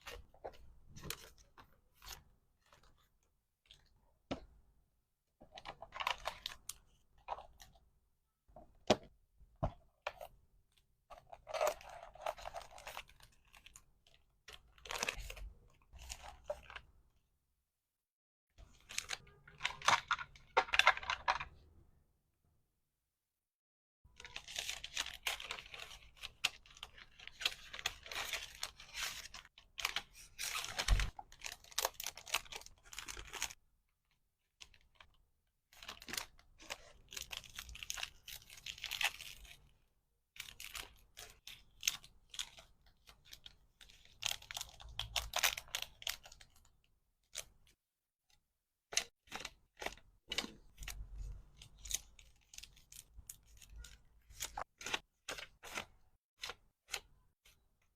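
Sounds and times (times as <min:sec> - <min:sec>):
packaging rustling and tearing: 0:24.2 - 0:33.6.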